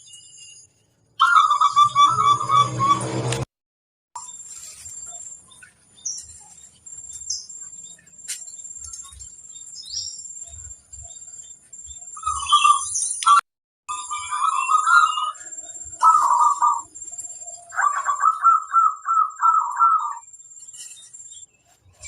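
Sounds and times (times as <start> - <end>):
birds chirping and warbling: 0.0 - 3.4, 4.2 - 22.0.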